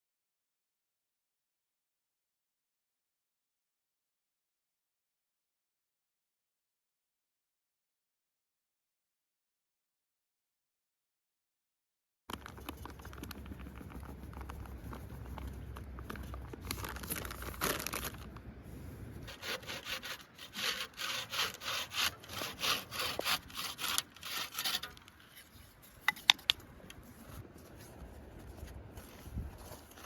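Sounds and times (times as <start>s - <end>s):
hand saw cutting wood: 19.3s - 25.5s.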